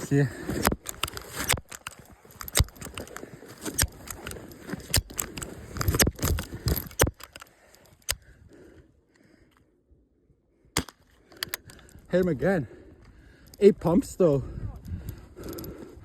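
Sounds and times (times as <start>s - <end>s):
rustling and scraping: 0.0s - 8.1s
sharp clicks: 0.5s - 8.3s, 10.8s - 12.0s.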